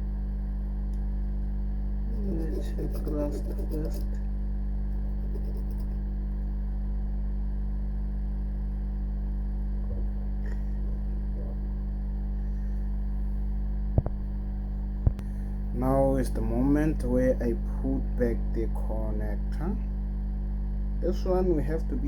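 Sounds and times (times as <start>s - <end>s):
electrical mains hum: 0.0s - 22.0s.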